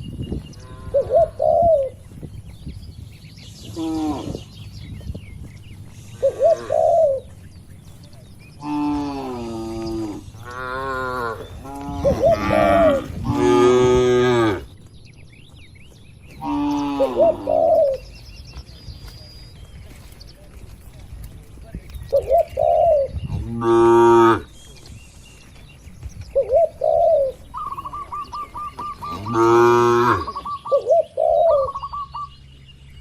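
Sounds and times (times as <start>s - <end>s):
cattle mooing: 8.6s - 14.7s, 29.1s - 30.4s.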